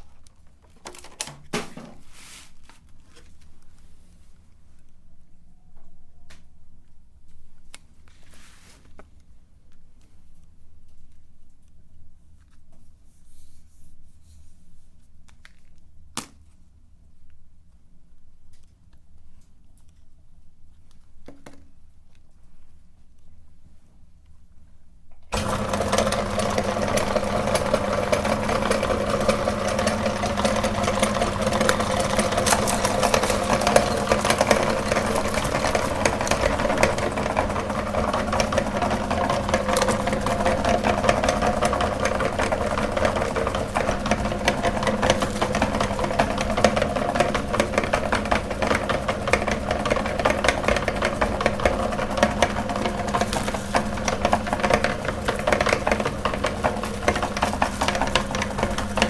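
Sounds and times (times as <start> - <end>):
grinding rattle and crackle: 25.3 - 59.0
meat grinder motor humming: 25.3 - 59.0.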